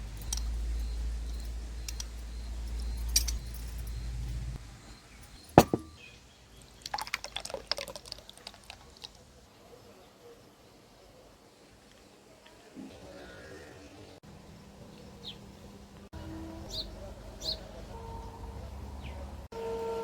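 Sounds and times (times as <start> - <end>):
low steady hum: 0.0 - 6.3
glassware clinking: 5.5 - 6.1.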